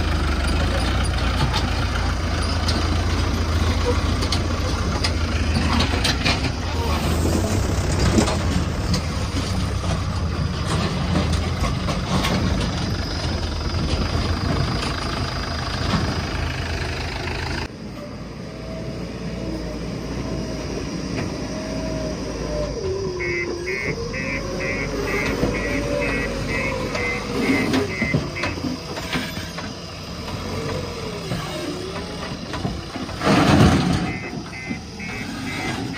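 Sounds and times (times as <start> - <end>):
diesel engine running: 0.0 - 35.9
short beeps: 23.2 - 28.6, 34.0 - 35.9.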